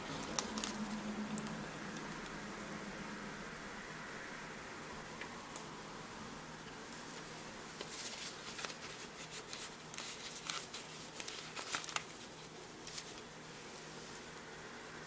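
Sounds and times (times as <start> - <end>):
paper rustling and crinkling: 7.8 - 14.2.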